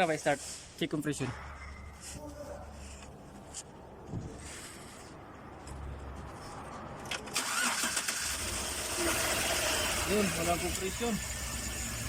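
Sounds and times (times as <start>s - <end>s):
engine cranking by starter: 7.0s - 12.0s.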